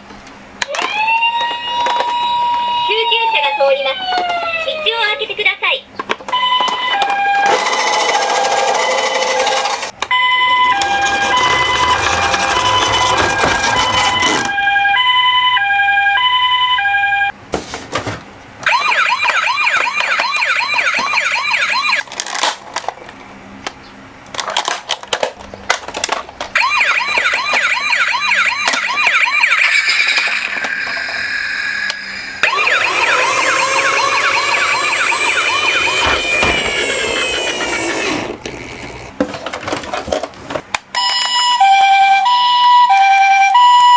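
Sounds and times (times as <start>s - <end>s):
two-tone toy siren: 0.7s - 5.2s, 6.3s - 17.3s, 18.6s - 22.1s, 26.6s - 38.4s, 41.0s - 43.9s
warbling yelp siren: 0.7s - 5.2s, 10.1s - 17.3s, 18.7s - 22.1s, 26.6s - 38.4s.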